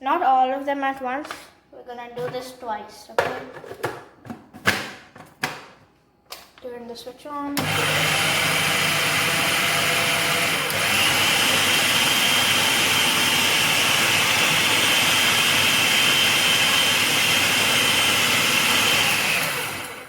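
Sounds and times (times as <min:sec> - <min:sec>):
electric food chopper whining: 0:07.6 - 0:20.0.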